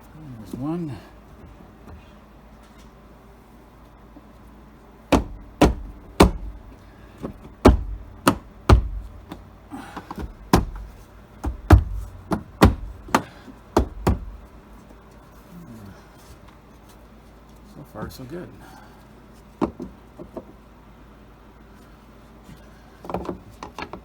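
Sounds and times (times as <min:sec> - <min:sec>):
knocks on plastic trim panel: 0:05.1 - 0:14.6.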